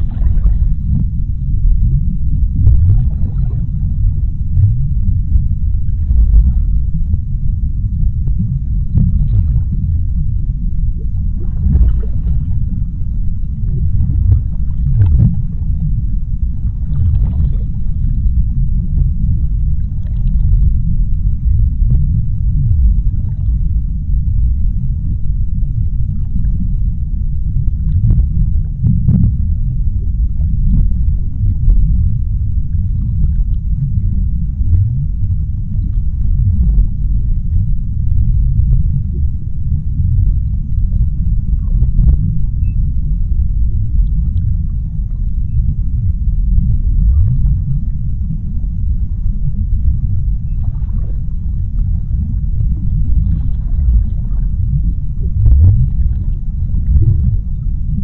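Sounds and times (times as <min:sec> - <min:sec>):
bubbling: 0:00.0 - 0:23.9, 0:43.8 - 0:58.0
deep underwater rumble: 0:00.0 - 0:58.0
faint crackles: 0:24.7 - 0:58.0.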